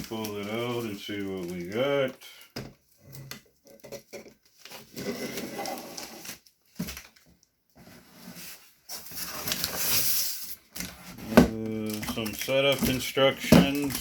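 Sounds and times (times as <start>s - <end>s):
cardboard box rustling and scraping: 4.6s - 7.0s, 7.8s - 14.0s.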